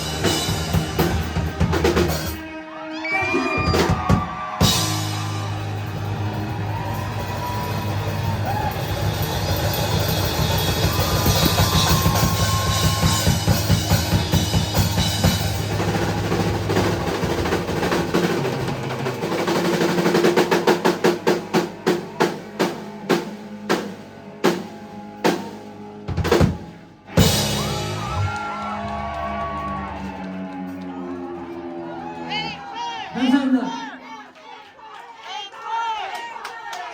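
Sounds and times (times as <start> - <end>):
live rock band playing: 0.0 - 32.4
rapid drum rolls: 3.6 - 23.9, 26.1 - 30.0.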